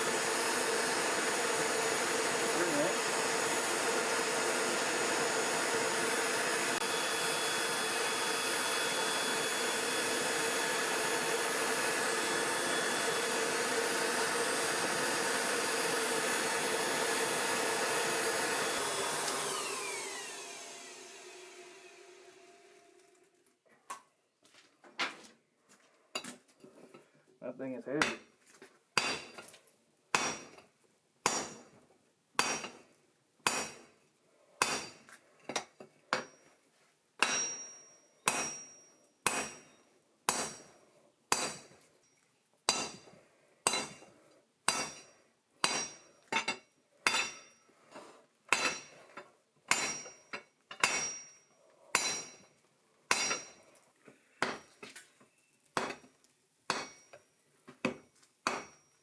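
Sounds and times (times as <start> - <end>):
hammer striking steel on anvil: 28.0 - 28.3, 29.0 - 29.5, 30.1 - 30.6, 31.2 - 31.6, 32.4 - 32.8, 33.4 - 33.8, 34.6 - 36.4, 37.2 - 40.7, 41.3 - 41.7, 42.7 - 44.1, 44.7 - 47.6, 48.5 - 49.0, 49.7 - 52.5, 53.1 - 53.6, 54.4 - 54.8, 55.8 - 56.1, 56.7 - 57.2, 57.8 - 58.9.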